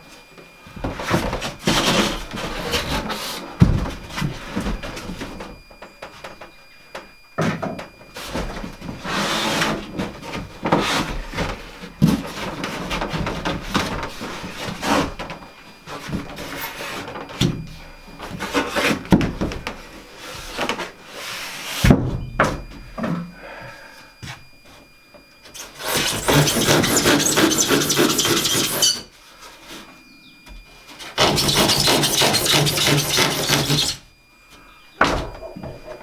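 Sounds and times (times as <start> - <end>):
wooden boards scraping: 25.6 - 29.1, 31.0 - 34.0.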